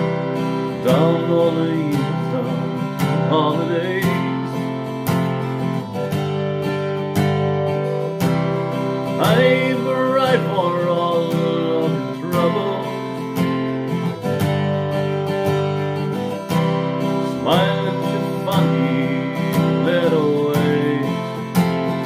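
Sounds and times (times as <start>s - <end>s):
acoustic guitar strumming: 0.0s - 22.0s.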